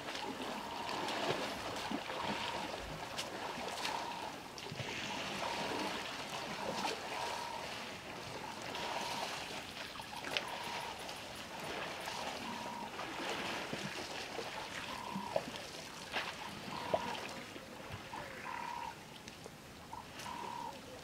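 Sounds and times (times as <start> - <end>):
water trickling and sloshing: 0.0 - 21.0
small animal piping call: 10.2 - 11.0, 14.9 - 15.4, 16.4 - 17.3.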